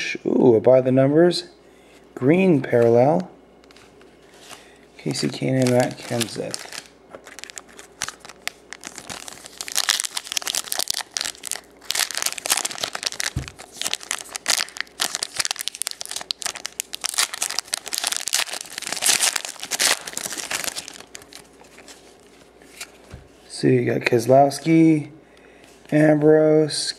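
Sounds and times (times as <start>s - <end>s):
wrapper tearing and crinkling: 5.1s - 23.0s.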